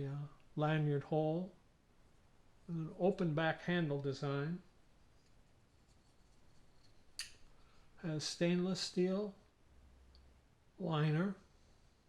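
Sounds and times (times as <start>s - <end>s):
faint handling noise: 4.6s - 8.0s.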